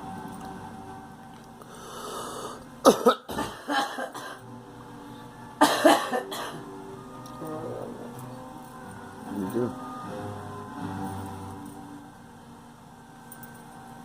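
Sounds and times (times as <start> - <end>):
girl coughing: 2.8 - 4.4, 5.6 - 6.6.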